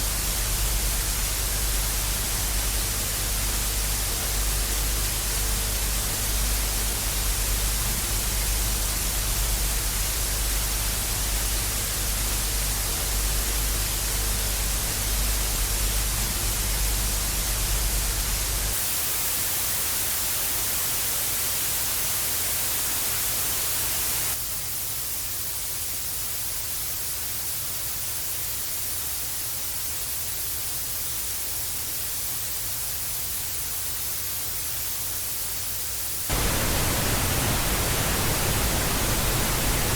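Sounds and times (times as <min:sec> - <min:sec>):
television static hiss: 0:00.0 - 0:39.9
low hum: 0:36.3 - 0:39.9.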